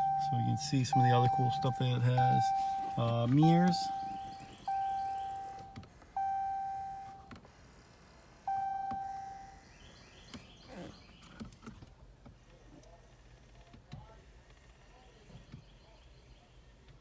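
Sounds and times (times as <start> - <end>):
dashboard warning chime ding: 0.0 - 7.3, 8.5 - 9.5.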